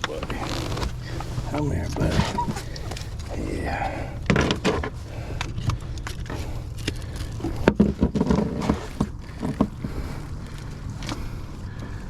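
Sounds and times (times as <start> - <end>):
knocks and thumps on boat deck: 0.0 - 6.5, 7.4 - 10.1
low steady rumble: 0.0 - 12.0.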